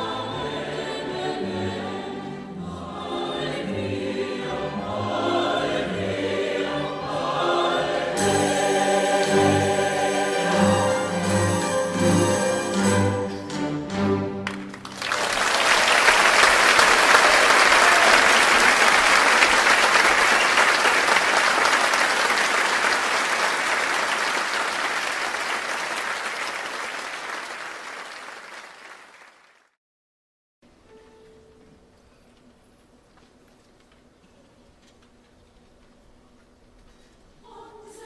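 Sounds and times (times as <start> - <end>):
choir singing chord: 0.0 - 14.0
audience applauding: 14.4 - 29.7.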